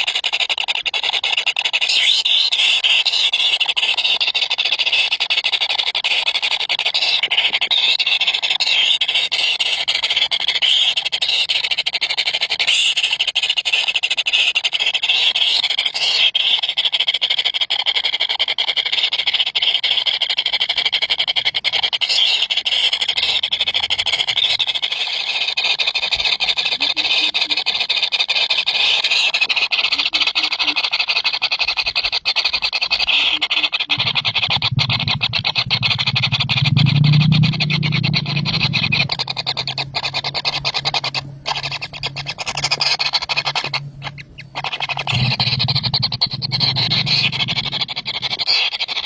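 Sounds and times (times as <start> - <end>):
nestling birds begging calls: 1.6 - 17.4, 18.8 - 49.0.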